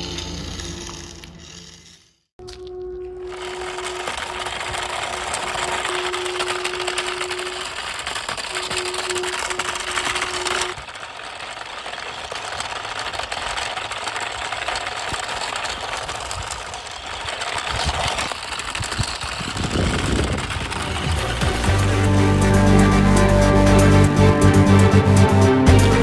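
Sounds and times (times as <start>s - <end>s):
toy truck electric motor whirring: 0.0s - 2.3s, 3.2s - 24.2s
steady tone with short gaps: 20.9s - 26.0s.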